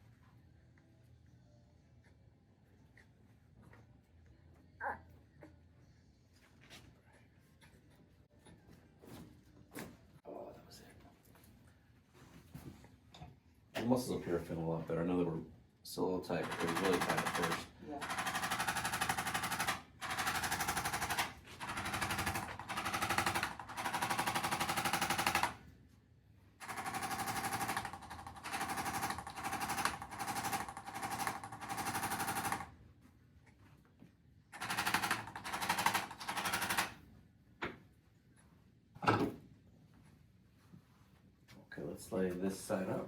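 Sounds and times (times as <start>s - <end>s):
percussion massager rattling: 16.4s - 25.5s, 26.6s - 32.7s, 34.6s - 37.0s.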